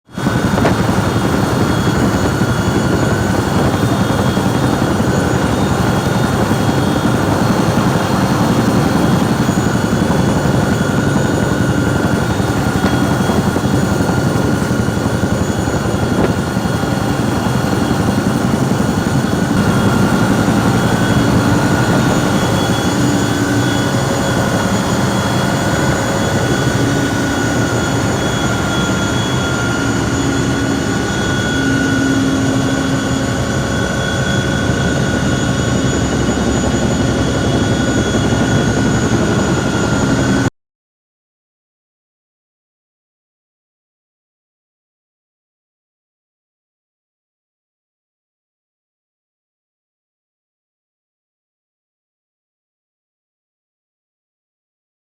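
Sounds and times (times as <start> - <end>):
aircraft engine droning: 0.1 - 40.5.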